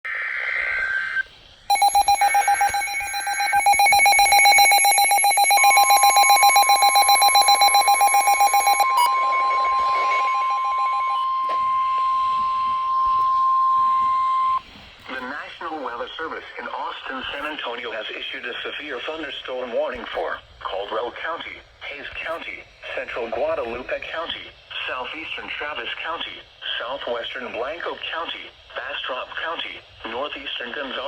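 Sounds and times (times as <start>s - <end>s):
warbling digital header burst: 1.7s - 13.0s
rapidly pulsing buzzy alarm: 1.7s - 14.6s
steady warning alarm tone: 1.7s - 14.6s.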